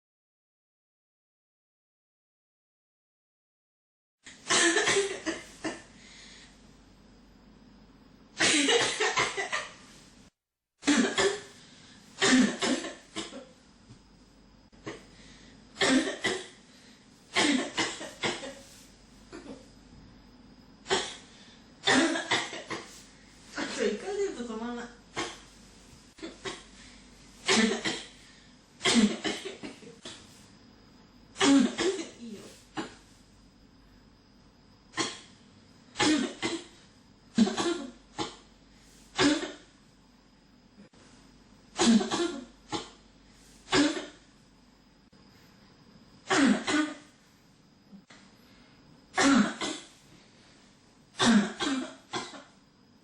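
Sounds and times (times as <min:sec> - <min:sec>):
person coughing: 0:04.4 - 0:05.9, 0:08.4 - 0:09.8, 0:10.8 - 0:11.6, 0:12.2 - 0:13.6, 0:15.8 - 0:16.6, 0:17.3 - 0:19.7, 0:20.9 - 0:23.0, 0:25.2 - 0:25.6, 0:26.2 - 0:30.4, 0:31.4 - 0:33.0, 0:36.0 - 0:38.5, 0:39.2 - 0:39.7, 0:41.8 - 0:43.0, 0:43.7 - 0:44.3, 0:46.3 - 0:47.1, 0:49.2 - 0:50.0, 0:51.2 - 0:52.6.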